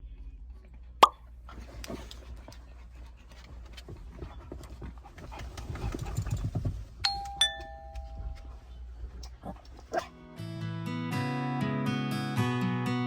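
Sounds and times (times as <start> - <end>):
two-note doorbell chime: 7.1 - 8.5.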